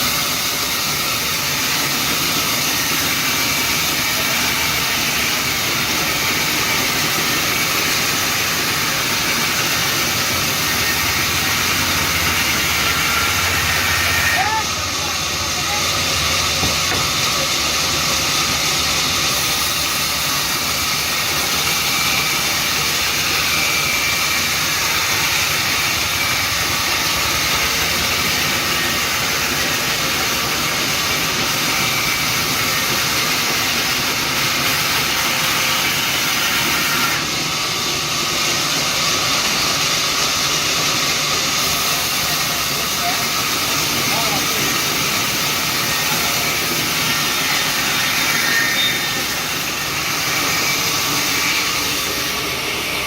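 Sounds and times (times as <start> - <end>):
loud hissing rush: 0.0 - 53.0.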